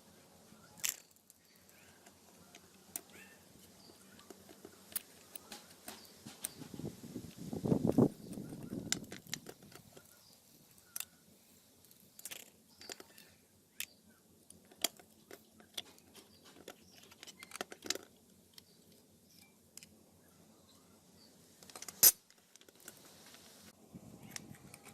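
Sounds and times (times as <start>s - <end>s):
small hard parts clicking: 0.8s - 11.2s, 11.8s - 20.0s.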